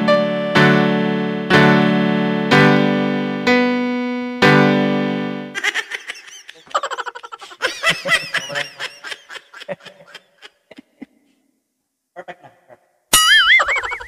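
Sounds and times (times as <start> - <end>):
person laughing: 5.6 - 11.3, 12.2 - 14.0.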